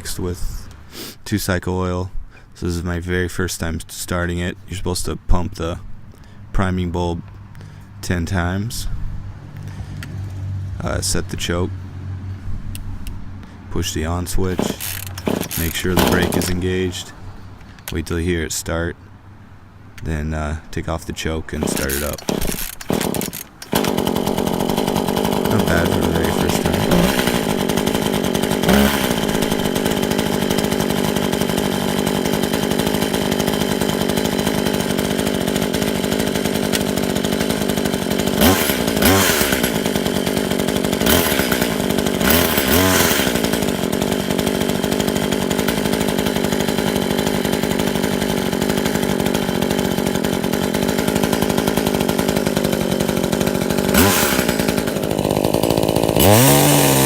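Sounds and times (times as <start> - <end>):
chainsaw throttle bursts: 0.8 - 1.3, 13.9 - 18.0, 21.5 - 57.0
chainsaw idling: 13.9 - 18.0, 21.5 - 57.0.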